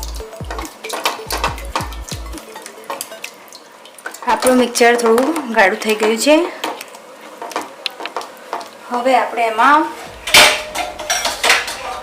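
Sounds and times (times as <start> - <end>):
music with deep bass beats: 0.0 - 2.5.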